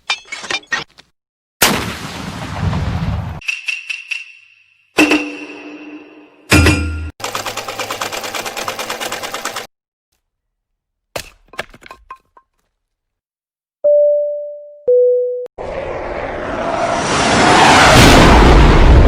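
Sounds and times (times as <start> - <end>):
sharp hit with ringing tone: 5.0 - 7.2
rapid clatter like gunfire: 7.2 - 9.7.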